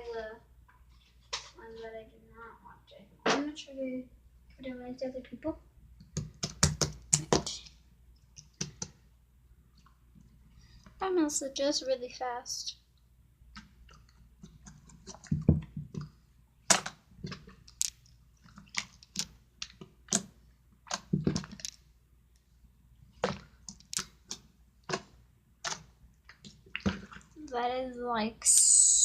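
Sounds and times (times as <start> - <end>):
slime squishing by hand: 13.6 - 21.9, 23.0 - 27.6.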